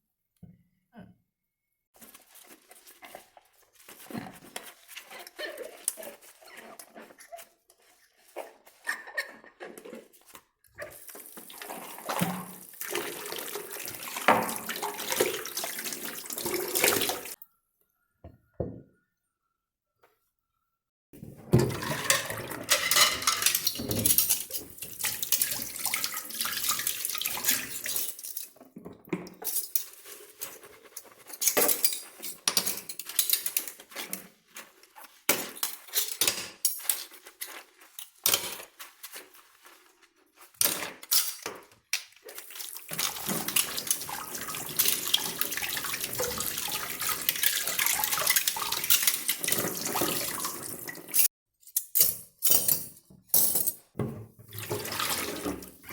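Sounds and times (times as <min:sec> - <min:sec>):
tap water running: 0:10.8 - 0:17.4, 0:21.2 - 0:51.3, 0:54.0 - 0:55.9
dishes and cutlery clinking: 0:21.5 - 0:26.0, 0:27.4 - 0:39.2.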